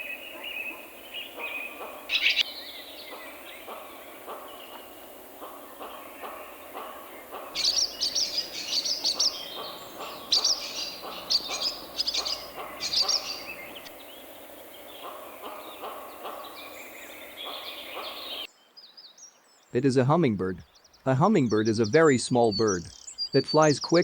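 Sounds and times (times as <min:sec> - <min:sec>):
low repeated bird notes: 0:00.0 - 0:18.5, 0:19.8 - 0:24.0
swallows twittering: 0:00.0 - 0:24.0.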